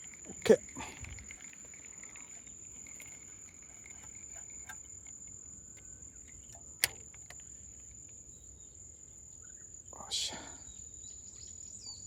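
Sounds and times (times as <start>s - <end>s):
faint clicks: 0.0s - 8.4s
crickets droning: 0.0s - 12.0s.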